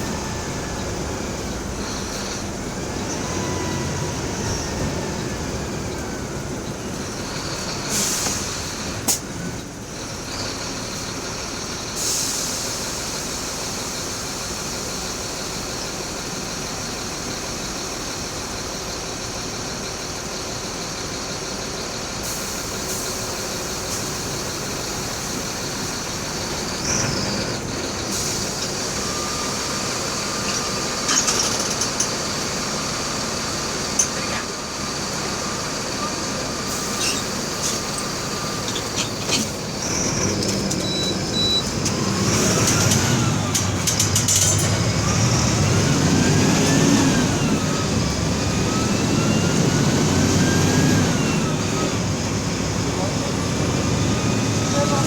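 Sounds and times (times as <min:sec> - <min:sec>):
bus engine running: 0:00.0 - 0:55.0
road noise: 0:00.0 - 0:55.0
air brake hisses: 0:07.8 - 0:09.2, 0:12.0 - 0:14.8, 0:36.6 - 0:39.6.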